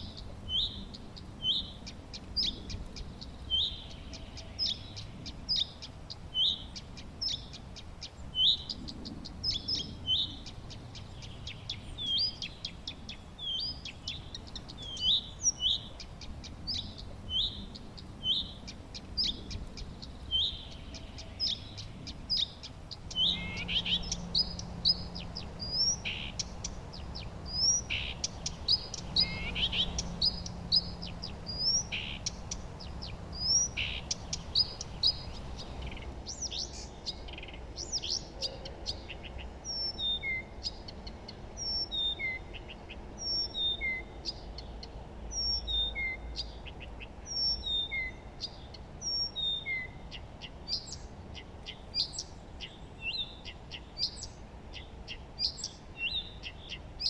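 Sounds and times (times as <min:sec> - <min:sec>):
faint low hum: 0:00.0 - 0:39.7
songbirds chirping: 0:00.0 - 0:57.0.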